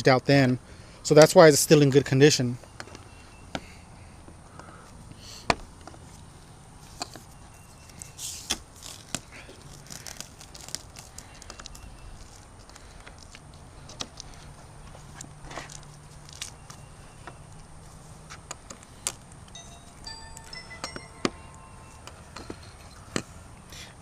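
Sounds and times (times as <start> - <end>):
hand tools clicking and tapping: 2.6 - 4.8, 6.9 - 23.7
scraping rustle: 5.9 - 16.9.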